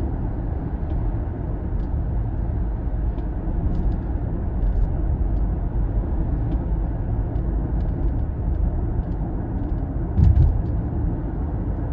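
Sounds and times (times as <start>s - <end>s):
low road rumble in car cabin: 0.0s - 11.9s.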